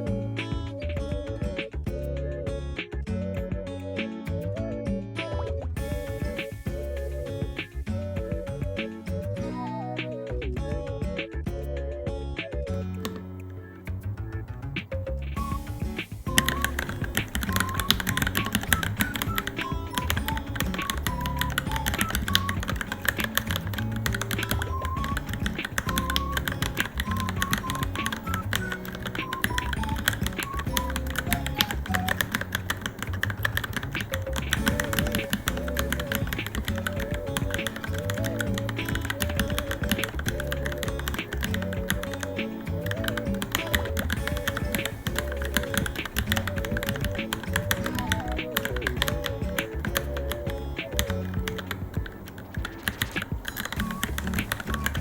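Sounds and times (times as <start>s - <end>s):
background music: 0.0s - 55.0s
fast mechanical keyboard typing: 16.3s - 55.0s.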